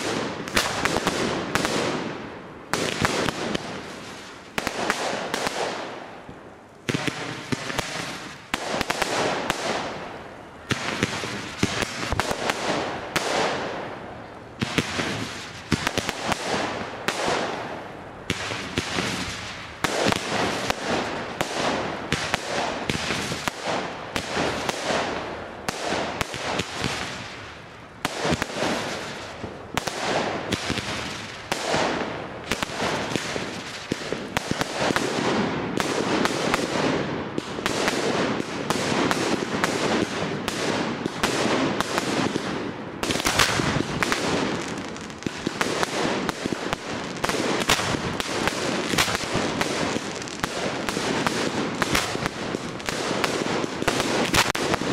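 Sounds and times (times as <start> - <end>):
fireworks bangs and crackles: 0.0 - 54.9.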